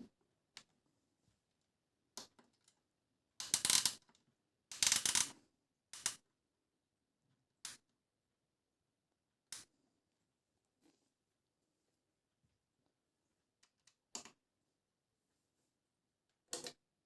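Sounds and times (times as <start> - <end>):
plastic toy clicks: 3.4 - 4.0, 4.7 - 5.3, 6.0 - 6.2.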